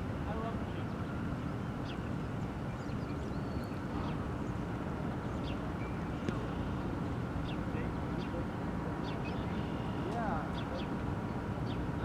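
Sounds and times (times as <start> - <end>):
low rumble of distant traffic: 0.0 - 12.0.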